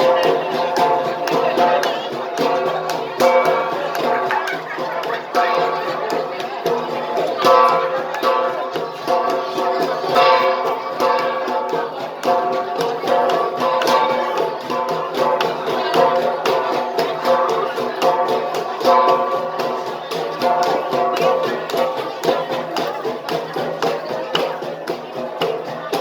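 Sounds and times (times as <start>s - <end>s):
bronze gongs struck in rhythm: 0.0s - 26.0s.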